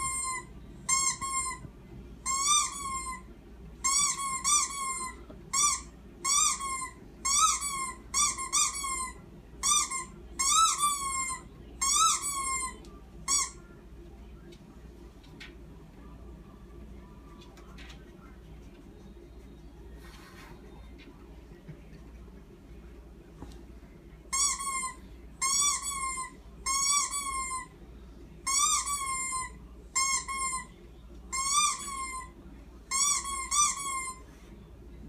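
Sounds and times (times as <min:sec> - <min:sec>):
squeaky toy squeaks: 0:00.0 - 0:01.6, 0:02.3 - 0:03.2, 0:03.8 - 0:13.6, 0:24.3 - 0:27.7, 0:28.5 - 0:30.7, 0:32.9 - 0:34.2.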